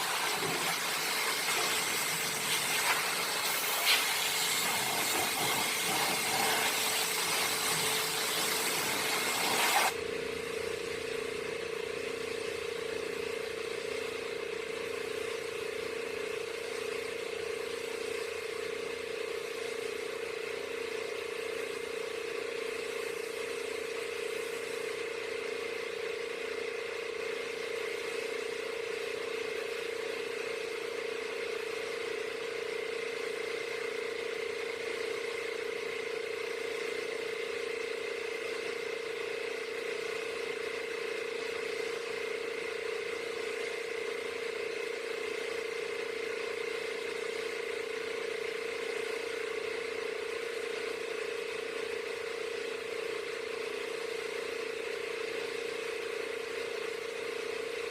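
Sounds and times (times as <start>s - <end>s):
high-pressure sprayer motor whirring: 0.0s - 26.1s.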